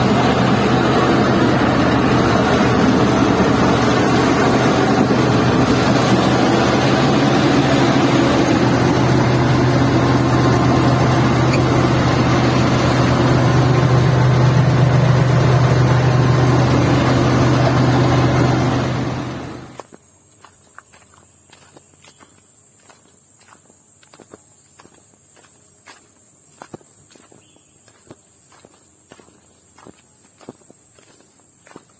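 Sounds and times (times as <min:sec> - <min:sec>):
diesel engine humming: 0:00.0 - 0:19.9.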